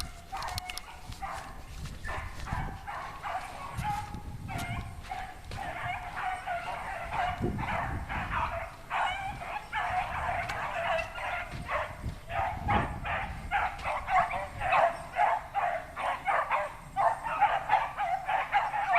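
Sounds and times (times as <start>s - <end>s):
dogs baying in chorus: 0.0s - 18.9s.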